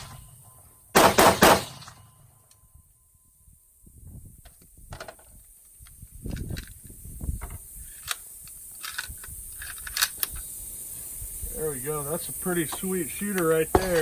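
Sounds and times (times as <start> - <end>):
rifle gunshots: 1.0 - 2.2
rifle action clicks: 8.0 - 10.4.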